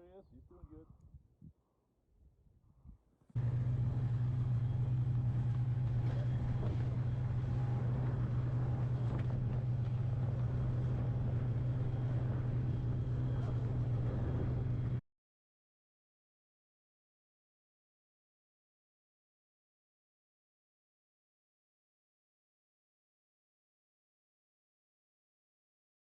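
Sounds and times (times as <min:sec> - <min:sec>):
snowmobile engine droning: 0:03.4 - 0:15.0.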